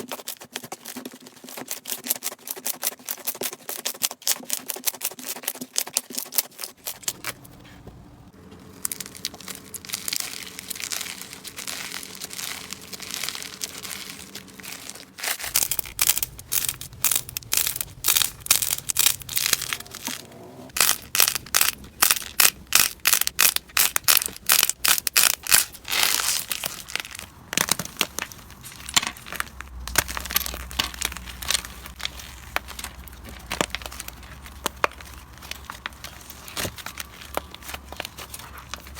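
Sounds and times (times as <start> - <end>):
slime crackling and popping: 8.8 - 20.1, 20.7 - 38.9.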